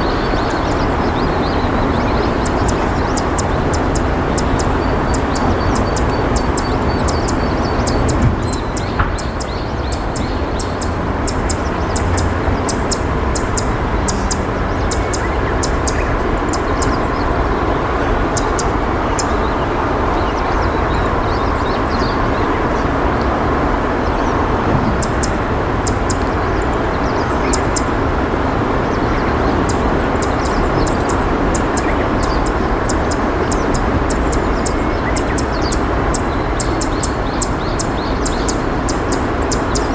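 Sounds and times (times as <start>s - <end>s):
high-pitched ticking chirps: 0.0s - 22.7s
river water rushing: 0.0s - 39.9s.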